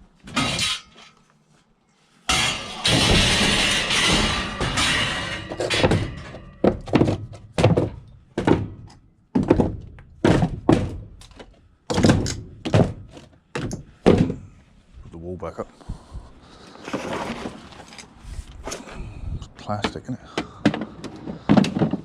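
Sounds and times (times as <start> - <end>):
scrap metal clattering: 0.2 - 1.2, 2.2 - 8.0
metal knocks: 2.3 - 14.5.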